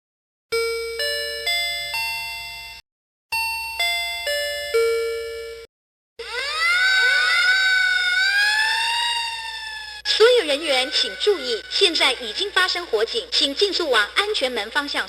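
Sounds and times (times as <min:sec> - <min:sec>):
rising siren sweep: 0:06.2 - 0:12.3.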